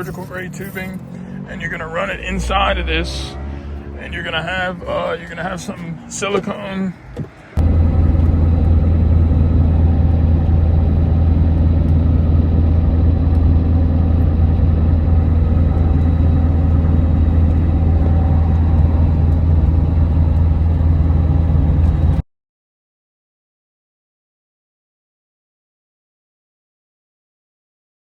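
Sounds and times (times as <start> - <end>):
diesel engine idling: 0.0 - 22.2.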